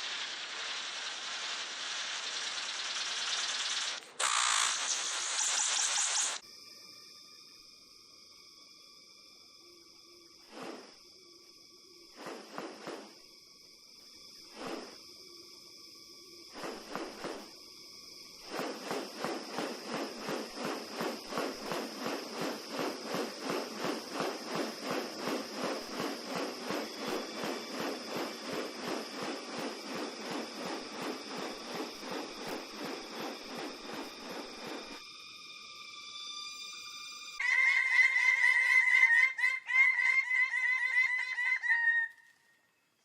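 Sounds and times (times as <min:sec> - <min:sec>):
bird calling in rapid series: 0:02.0 - 0:06.4, 0:37.4 - 0:42.4
steady high-pitched hum: 0:14.2 - 0:37.4.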